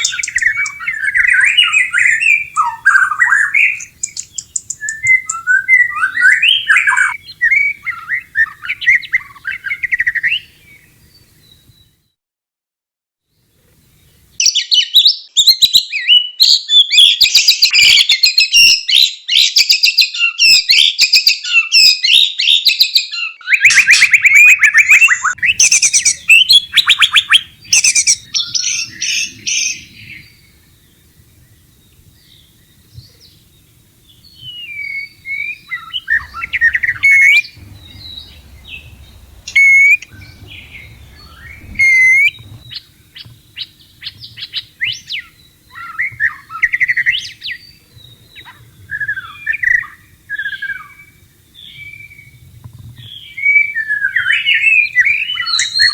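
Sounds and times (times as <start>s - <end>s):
bird chattering and trilling: 0.0s - 11.6s, 23.7s - 52.2s
bird whistled notes: 0.0s - 11.9s, 23.5s - 52.4s
faint low hum: 0.0s - 12.0s, 23.7s - 55.9s.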